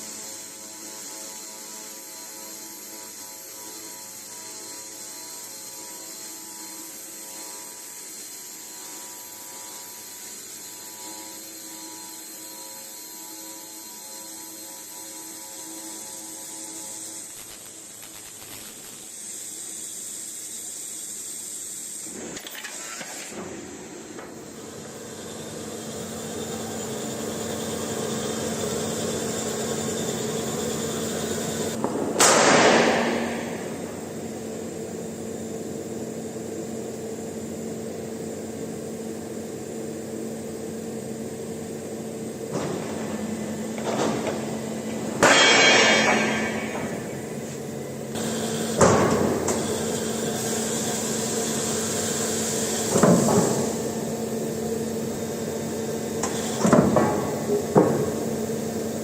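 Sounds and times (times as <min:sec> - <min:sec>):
loud noisy cutting bursts: 0:14.4 - 0:20.4
metal sawing machine humming: 0:22.6 - 0:38.3, 0:39.3 - 0:59.0.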